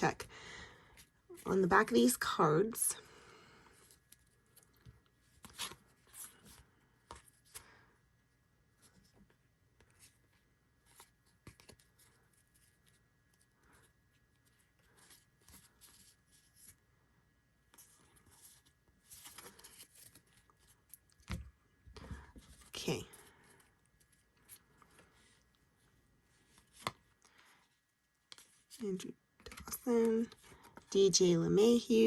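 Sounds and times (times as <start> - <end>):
trading cards rustling: 17.8 - 21.4.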